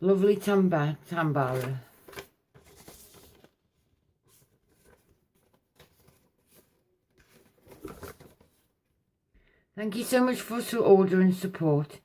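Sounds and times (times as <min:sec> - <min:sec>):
faint paper rustling and taps: 0:04.2 - 0:08.7.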